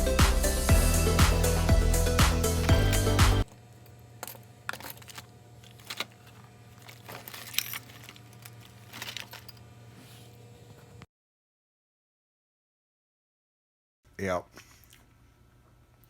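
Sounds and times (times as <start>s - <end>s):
steady low hum: 0.0s - 11.0s
keys clicking and clinking: 3.8s - 9.7s.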